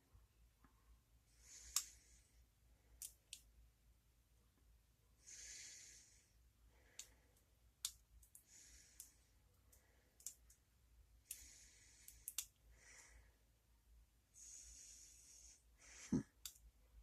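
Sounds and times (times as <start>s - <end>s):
soft breathing: 0.6s - 3.0s, 5.1s - 7.6s, 8.3s - 17.0s.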